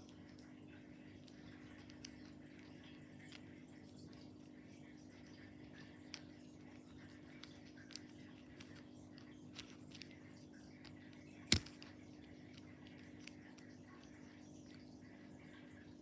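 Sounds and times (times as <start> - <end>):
faint steady hum: 0.0 - 16.0
plastic pieces clicking: 10.8 - 13.7
loud sharp snap: 11.5 - 11.8.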